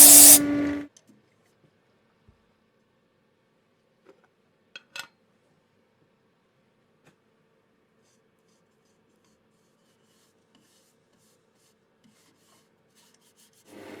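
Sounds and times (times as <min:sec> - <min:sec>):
dry rubbing on wooden bowl: 0:00.0 - 0:00.4.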